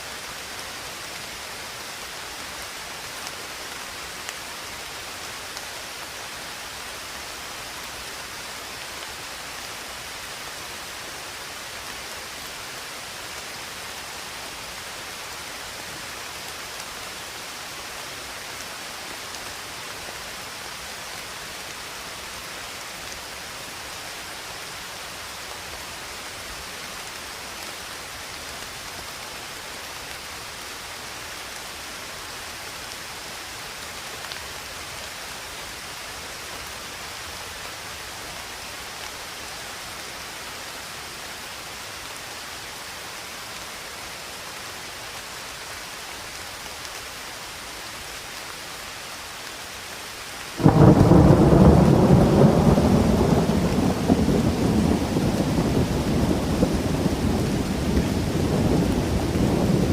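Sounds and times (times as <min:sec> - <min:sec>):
rain hiss: 0:00.0 - 0:59.9
thunder rumbling: 0:50.6 - 0:59.9.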